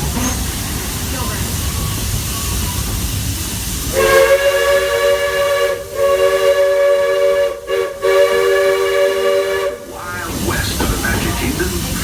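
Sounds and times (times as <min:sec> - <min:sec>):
train running noise: 0:00.0 - 0:12.0
steam locomotive chime whistle: 0:03.8 - 0:09.9.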